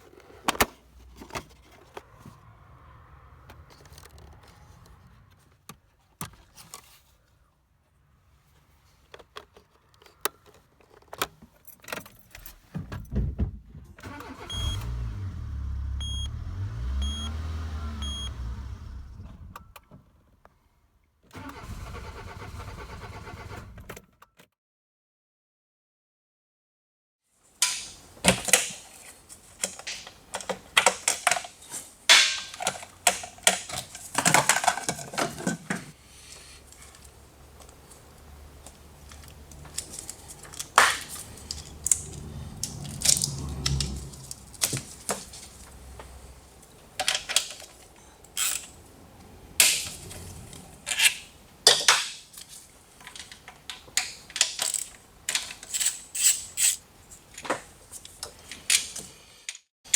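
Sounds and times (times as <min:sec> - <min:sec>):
metal tools clinking: 0:54.1 - 0:56.8.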